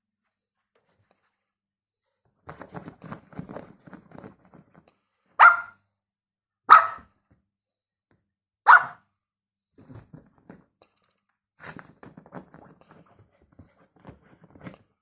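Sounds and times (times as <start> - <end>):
small dog yapping: 5.4 - 5.8, 6.7 - 7.0, 8.7 - 9.0.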